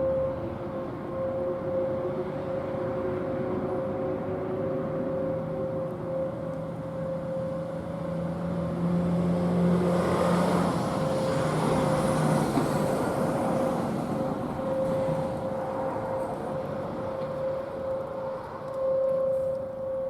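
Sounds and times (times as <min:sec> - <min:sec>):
distant warning sirens: 0:00.0 - 0:20.0
vehicle driving past: 0:08.8 - 0:13.7.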